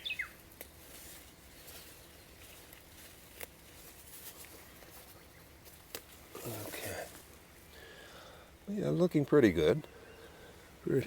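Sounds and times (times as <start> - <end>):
leaves rustling in hands: 0.0 - 8.0.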